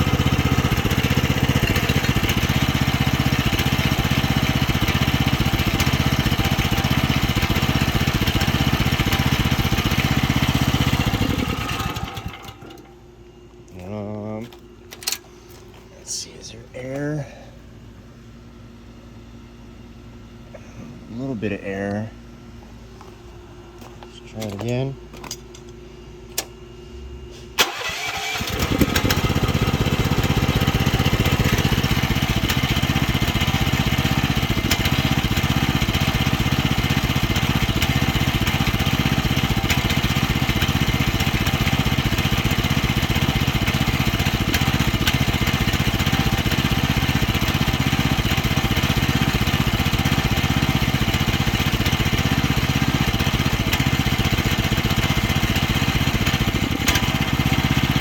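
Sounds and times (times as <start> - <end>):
small gasoline engine running: 0.0 - 12.9, 27.6 - 58.0.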